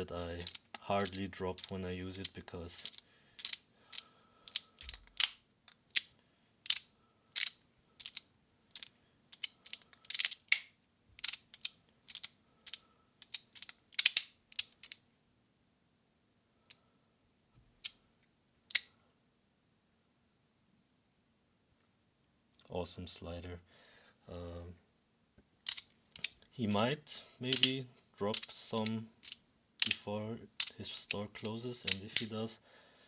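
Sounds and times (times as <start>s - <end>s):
fidget slider clicking: 0.4s - 6.1s, 6.7s - 15.0s, 25.7s - 26.8s, 27.5s - 30.0s, 30.6s - 32.3s.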